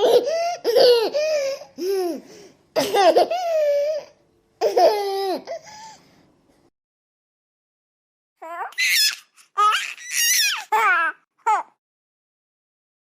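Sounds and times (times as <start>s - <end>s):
baby laughing: 0.0s - 2.2s, 2.8s - 5.6s, 8.4s - 11.8s.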